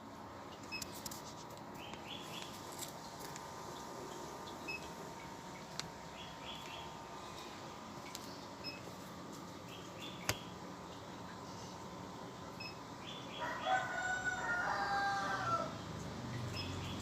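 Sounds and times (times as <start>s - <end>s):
sharp click: 10.2s - 10.4s
rooster crowing: 13.3s - 15.8s.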